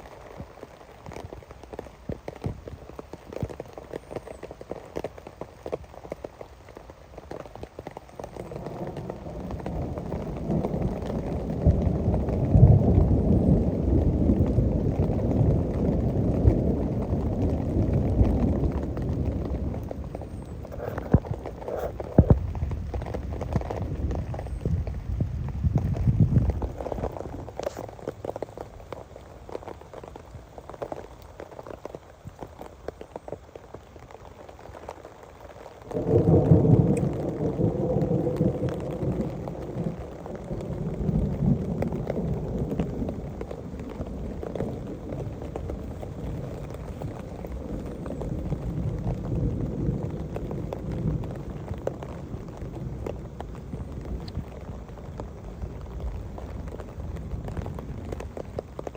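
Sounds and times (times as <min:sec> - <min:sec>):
rain dripping and pattering: 0:00.0 - 0:58.9
thunder rumbling: 0:07.7 - 0:32.6, 0:35.8 - 0:58.9.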